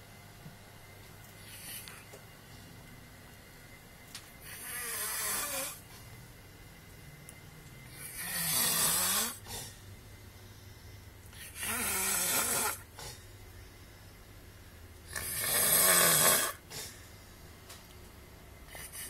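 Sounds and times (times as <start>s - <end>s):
quiet breathing: 1.3s - 2.9s, 7.8s - 15.4s, 16.4s - 17.7s
loud rasping snoring: 4.4s - 5.8s, 7.9s - 9.8s, 11.4s - 13.2s, 15.1s - 17.0s.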